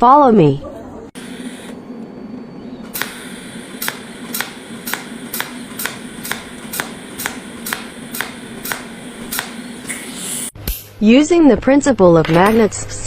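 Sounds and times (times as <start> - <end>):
low hum: 1.0 - 11.1
sharp mechanical clicks: 2.9 - 10.0.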